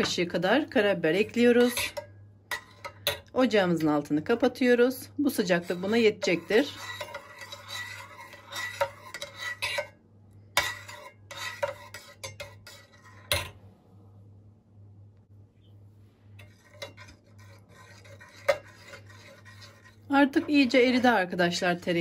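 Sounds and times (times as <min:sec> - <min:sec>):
spoon stirring and scraping pan: 0:00.0 - 0:13.6, 0:16.3 - 0:22.0
spoon clinking against pan: 0:01.6 - 0:03.3.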